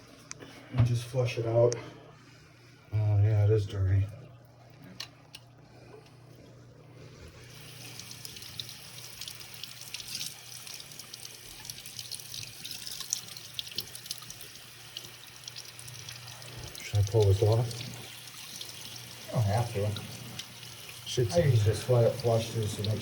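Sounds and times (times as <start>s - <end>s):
tap water running in sink: 7.4s - 23.0s.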